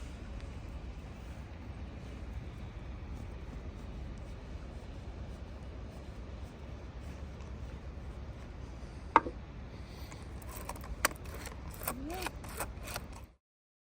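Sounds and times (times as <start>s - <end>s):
steady low rumble: 0.0s - 13.3s
hard parts clicking and knocking: 10.3s - 13.3s.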